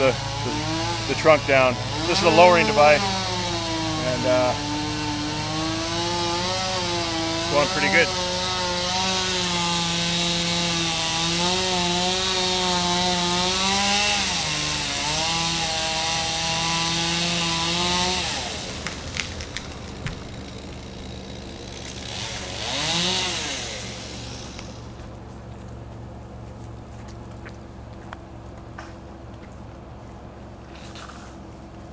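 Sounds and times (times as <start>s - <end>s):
chainsaw cutting: 0.0s - 25.7s
engine rising and falling: 14.2s - 29.0s
sharp knocks: 18.8s - 20.9s.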